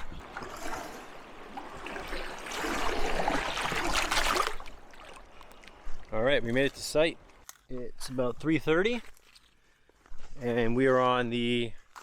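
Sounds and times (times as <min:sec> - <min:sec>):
water sloshing around a canoe: 0:00.0 - 0:06.1
water splashing: 0:00.0 - 0:06.1.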